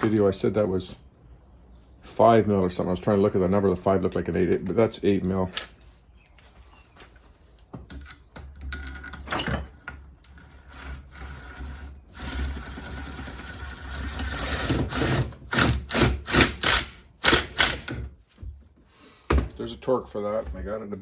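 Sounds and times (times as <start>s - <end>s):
power driver running: 10.3s - 17.8s.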